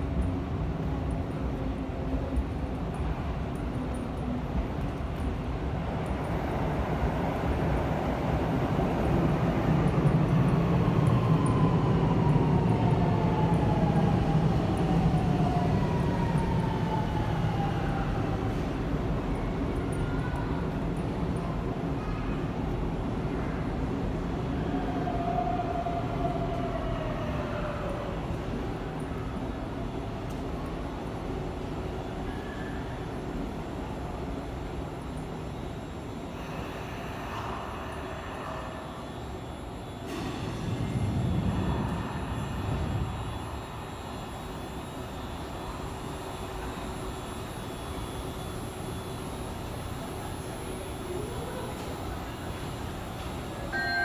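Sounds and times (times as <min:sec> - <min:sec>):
electric train humming: 0:00.0 - 0:54.0
faint steady tones: 0:27.8 - 0:54.0.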